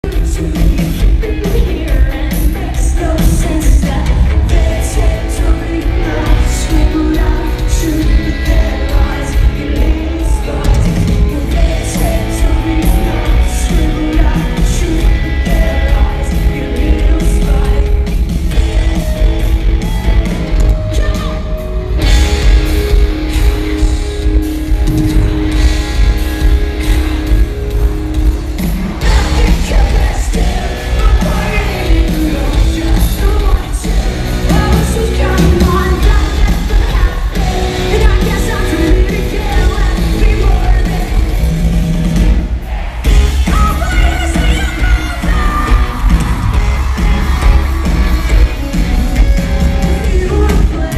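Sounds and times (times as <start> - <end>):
woman singing lead vocal: 0.0 - 19.3, 29.0 - 41.4, 42.7 - 47.4, 49.9 - 50.9
live rock band playing: 0.0 - 50.9.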